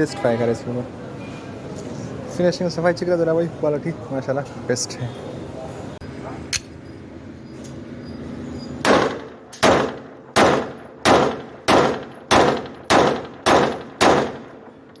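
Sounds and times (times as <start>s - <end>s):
pistol shots: 8.8s - 15.0s.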